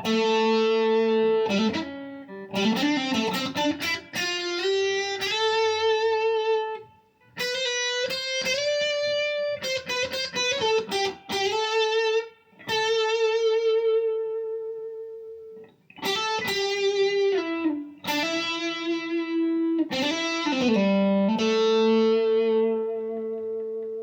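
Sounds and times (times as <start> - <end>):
electric guitar lead lines: 0.0 - 24.0.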